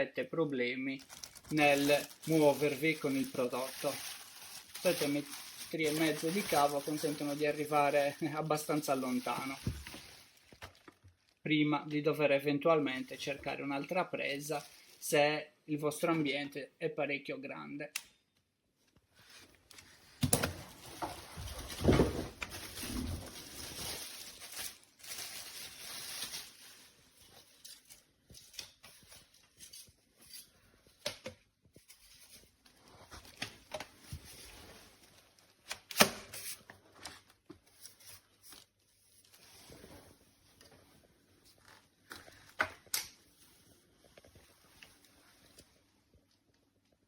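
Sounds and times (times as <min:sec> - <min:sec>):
handling rustling: 0:01.0 - 0:11.3, 0:19.3 - 0:30.5.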